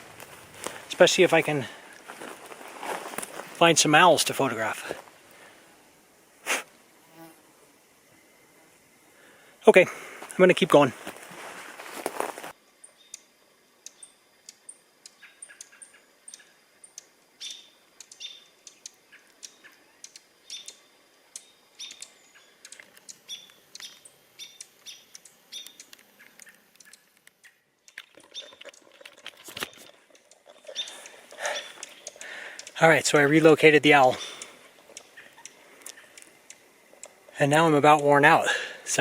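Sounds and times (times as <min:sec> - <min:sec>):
small bird chirping: 0:12.8 - 0:32.8, 0:34.1 - 0:37.2.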